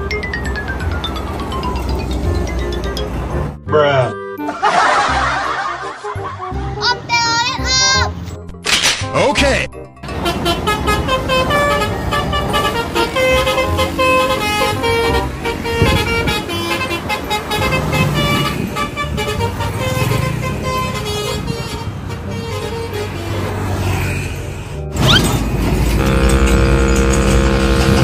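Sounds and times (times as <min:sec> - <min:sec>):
musical air horn tune: 0:10.1 - 0:23.4, 0:25.9 - 0:28.0
vehicle engine running: 0:24.8 - 0:28.0.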